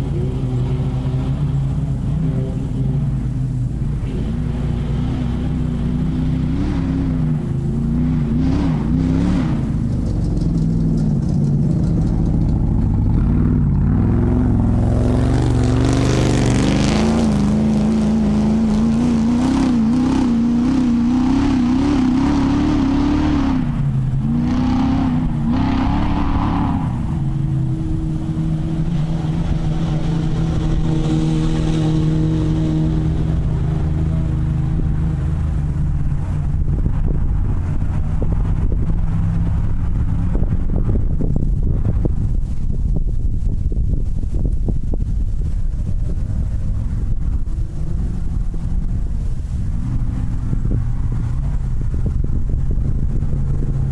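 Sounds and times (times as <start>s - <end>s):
racing buggy engine revving: 0.0s - 53.9s
rushing noise: 0.0s - 53.9s.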